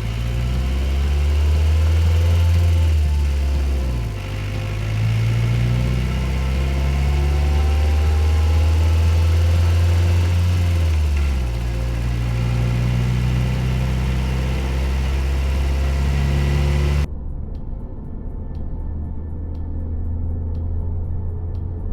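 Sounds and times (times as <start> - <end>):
car engine droning: 0.0 - 17.1.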